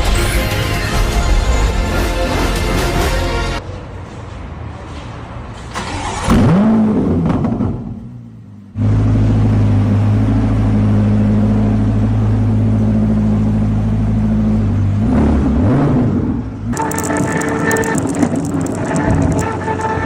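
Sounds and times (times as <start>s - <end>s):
car engine starting and idling: 5.7s - 14.2s, 16.5s - 20.0s.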